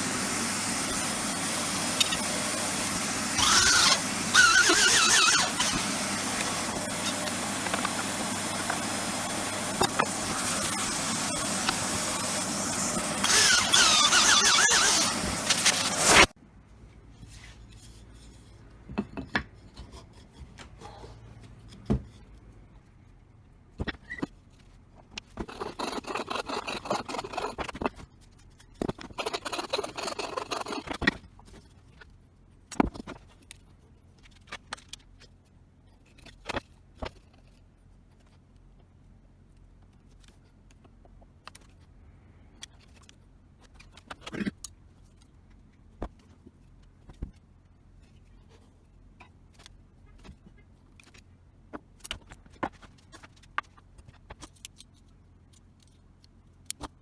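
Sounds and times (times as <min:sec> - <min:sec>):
abrasive tool working material: 0:00.0 - 0:16.3.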